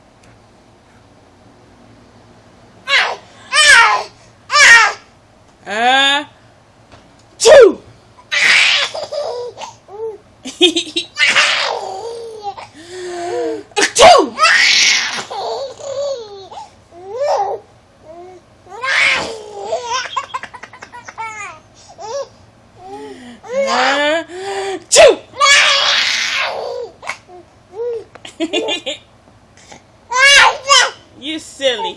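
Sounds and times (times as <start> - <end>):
adult sneezing: 7.4 - 7.8, 13.7 - 14.4, 24.9 - 25.3
baby laughing: 8.3 - 17.6, 18.7 - 23.9, 25.4 - 29.1.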